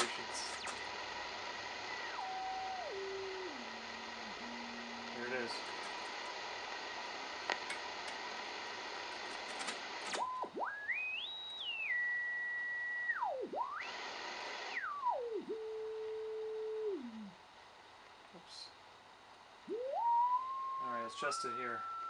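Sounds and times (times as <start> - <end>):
radio clicks: 0.0 - 10.6
receiver hiss: 0.0 - 22.0
radio heterodyne whistle: 10.2 - 14.0, 19.7 - 22.0.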